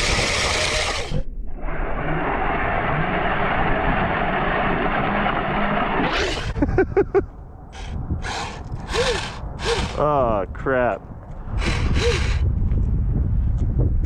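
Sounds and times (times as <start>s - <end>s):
toy snowcat motors and tracks: 0.0s - 6.6s, 7.7s - 10.0s, 11.6s - 12.4s
faint wavering whine: 0.2s - 6.6s.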